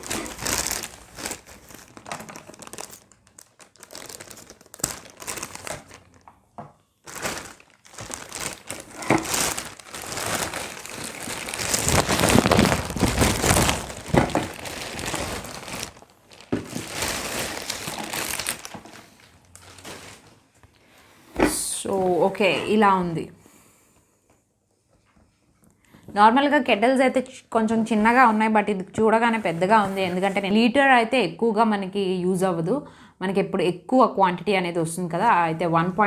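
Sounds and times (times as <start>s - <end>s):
packaging crinkling and rustling: 0.0s - 6.4s, 7.0s - 20.8s.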